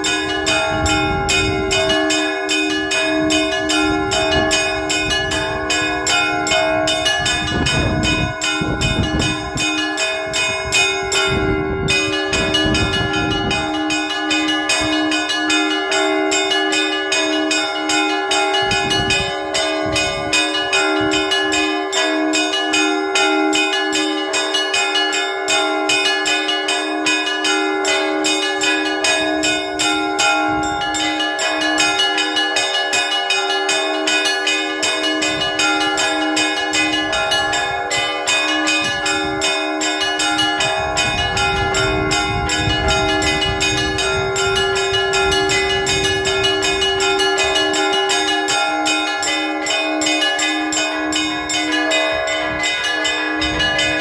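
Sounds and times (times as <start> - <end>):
large bells humming: 0.0 - 54.0
small bells ringing rapidly: 0.0 - 54.0.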